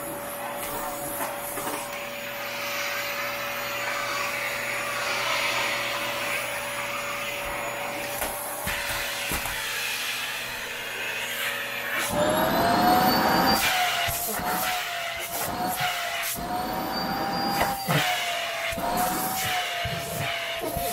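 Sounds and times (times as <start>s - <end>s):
vacuum cleaner running: 0.0s - 20.9s.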